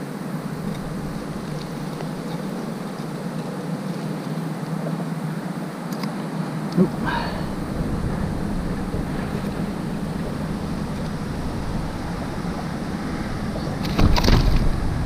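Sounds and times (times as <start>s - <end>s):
water noise: 0.0s - 4.4s, 6.7s - 15.0s
wind noise on microphone: 0.1s - 3.4s, 6.8s - 15.0s
knocks and bumps: 6.9s - 15.0s.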